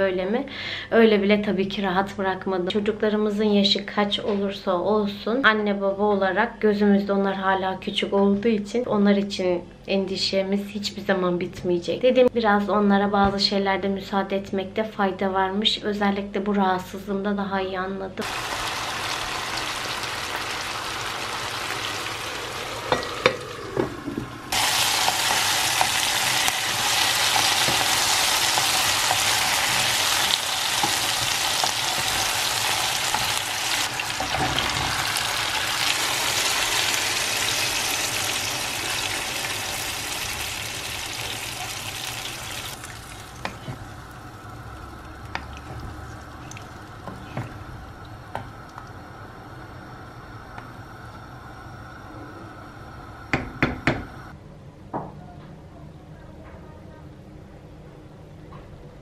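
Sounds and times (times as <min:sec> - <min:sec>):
food sizzling in a pan: 0:18.2 - 0:48.3.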